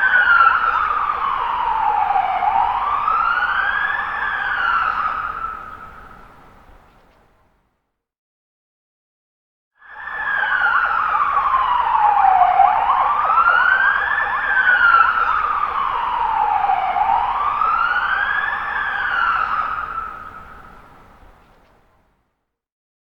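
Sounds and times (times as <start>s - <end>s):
emergency siren wailing: 0.0s - 6.2s, 9.8s - 21.1s.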